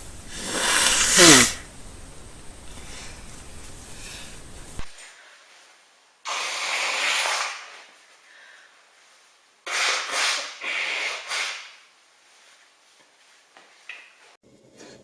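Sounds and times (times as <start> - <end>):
person blowing nose: 0.0 - 4.8.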